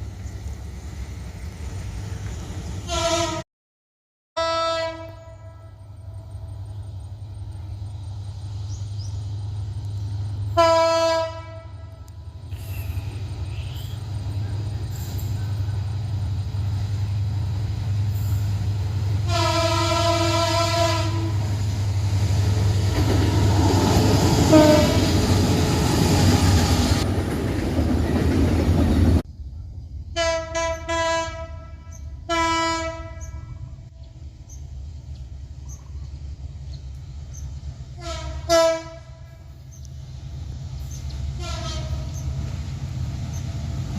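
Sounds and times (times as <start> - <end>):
train rumble: 0.0 - 3.4, 4.4 - 43.9
train horn: 2.8 - 3.4, 4.4 - 6.7, 10.5 - 13.0, 19.2 - 21.6, 24.4 - 27.0, 30.1 - 33.9, 38.0 - 39.6, 41.3 - 42.2.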